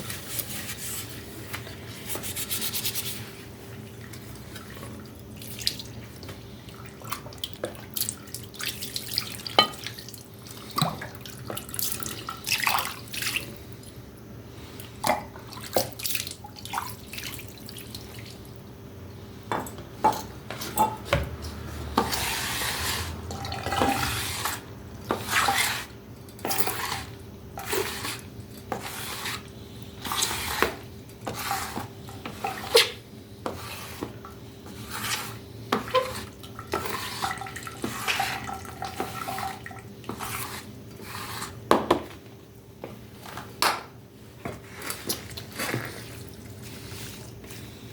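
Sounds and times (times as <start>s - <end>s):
water splashing in a sink: 3.8s - 14.0s, 14.9s - 18.6s, 34.9s - 40.7s.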